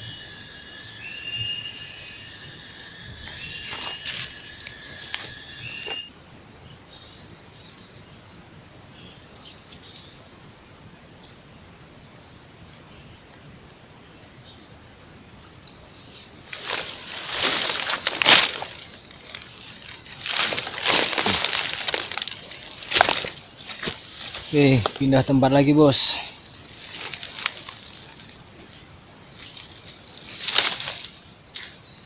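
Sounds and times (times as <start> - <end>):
insects droning: 0.0 - 32.0
scuffs and rustles: 16.4 - 25.3, 26.5 - 31.8.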